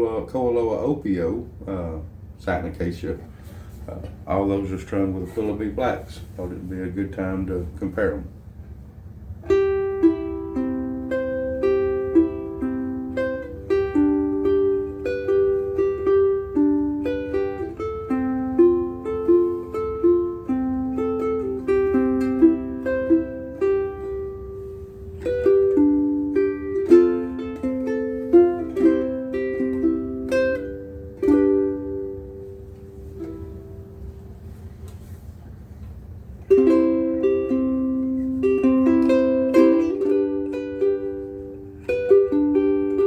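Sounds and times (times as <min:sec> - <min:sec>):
ukulele melody plucked: 0:09.4 - 0:35.2, 0:36.4 - 0:43.0.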